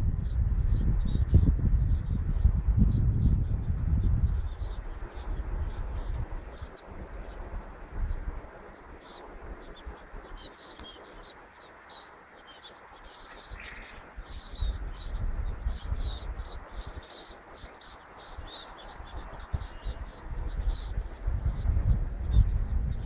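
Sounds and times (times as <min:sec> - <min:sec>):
wind buffeting microphone: 0:00.0 - 0:23.0
sparrows chirping: 0:04.3 - 0:23.0.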